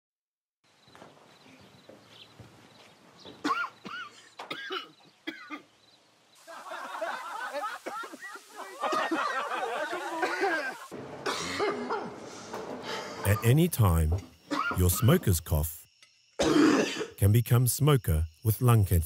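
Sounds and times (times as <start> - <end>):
man coughing harshly: 3.4 - 5.6, 10.2 - 12.2, 14.5 - 15.2, 16.4 - 17.2.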